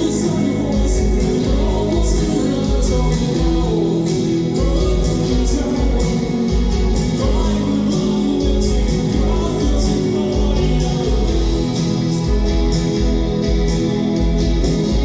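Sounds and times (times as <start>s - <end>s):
guitar: 0.0s - 15.0s
person singing: 0.0s - 15.0s.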